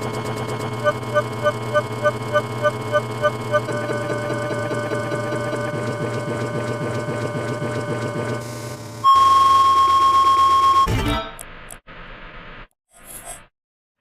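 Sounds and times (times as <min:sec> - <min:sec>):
buzzing engine-like drone: 0:00.0 - 0:09.1
loud single-pitch beep: 0:09.0 - 0:11.0.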